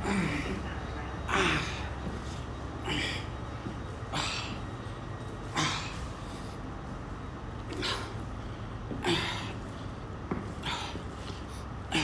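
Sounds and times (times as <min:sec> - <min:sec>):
man breathing hard: 0:07.7 - 0:09.8, 0:10.5 - 0:12.0.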